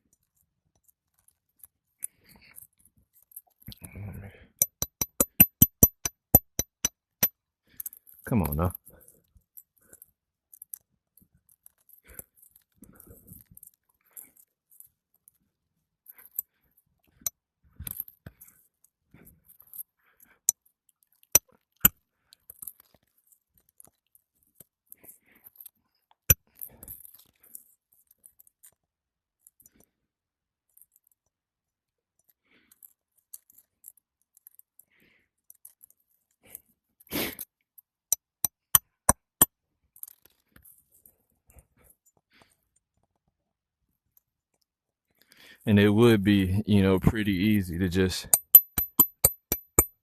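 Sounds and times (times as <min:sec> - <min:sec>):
metal tool knocks and clicks: 0:04.6 - 0:06.9, 0:48.3 - 0:50.0
quick taps: 0:04.6 - 0:06.9, 0:48.3 - 0:49.9.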